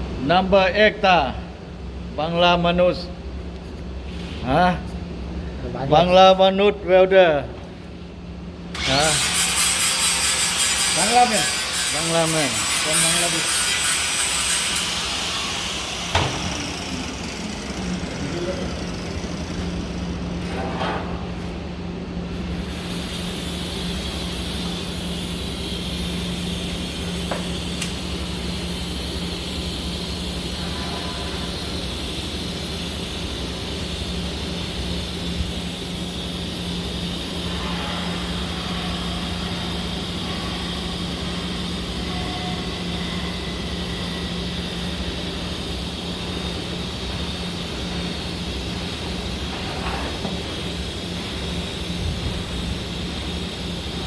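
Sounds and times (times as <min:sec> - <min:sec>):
welding machine hum: 0:08.7 - 0:20.4, 0:22.4 - 0:54.0
welding arc hiss: 0:08.8 - 0:20.4, 0:22.5 - 0:54.0.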